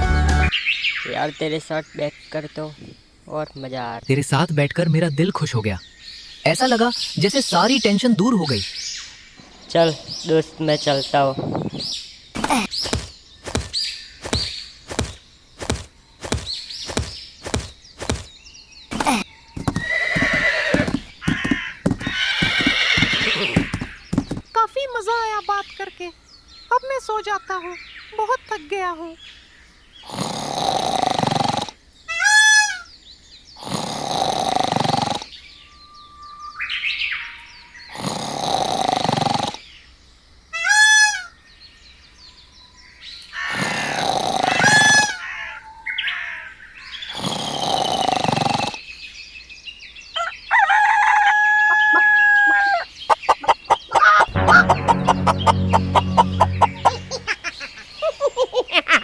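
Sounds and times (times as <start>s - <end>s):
chicken calls: 18.9s - 24.4s, 43.3s - 46.4s, 50.2s - 59.0s
rooster crowing: 50.2s - 52.8s
chicken clucking rapidly: 53.1s - 57.9s.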